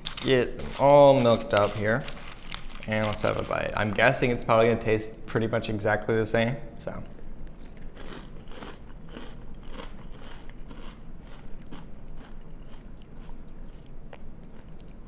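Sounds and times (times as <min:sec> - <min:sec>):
person chewing crunchy cereal: 0:07.1 - 0:15.0.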